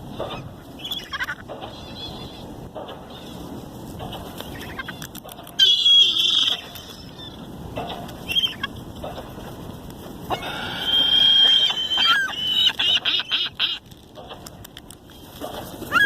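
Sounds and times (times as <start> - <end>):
gulls squawking: 0.0 - 3.5, 4.4 - 8.8, 10.3 - 13.9.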